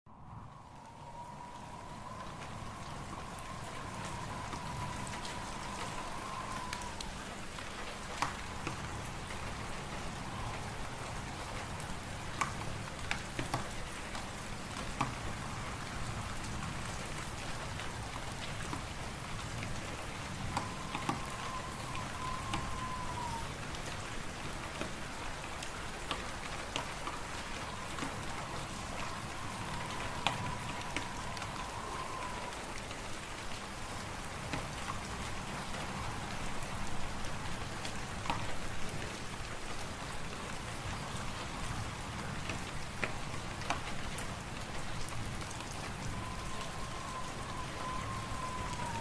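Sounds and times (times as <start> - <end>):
wind and blowing snow: 0.1 - 49.0
faint thin whistle: 0.8 - 7.2, 20.4 - 23.6, 27.4 - 32.8, 46.0 - 49.0
wood fire crackling: 26.7 - 32.8.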